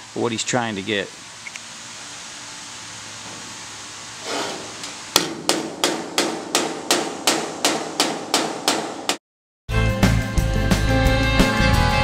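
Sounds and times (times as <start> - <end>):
hammer striking sheet metal: 4.3 - 9.2.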